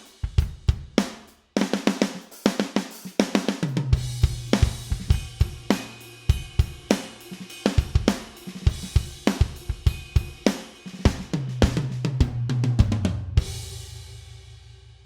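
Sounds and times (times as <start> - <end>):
drum kit groove: 0.0 - 14.6
cymbal hits: 4.0 - 12.0
low ringing drum: 4.0 - 14.8.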